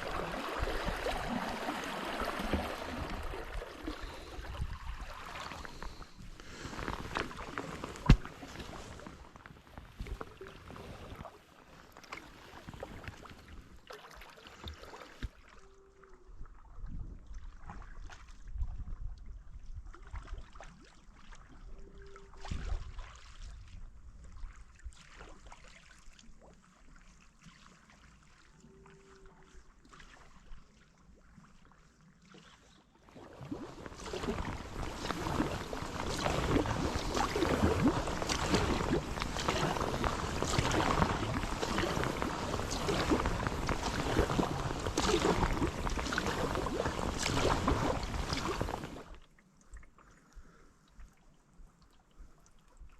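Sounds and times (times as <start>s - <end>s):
water dripping off paddle: 0.0s - 11.3s, 33.2s - 51.2s
paddle strokes splashing water: 0.0s - 15.6s, 22.4s - 51.3s.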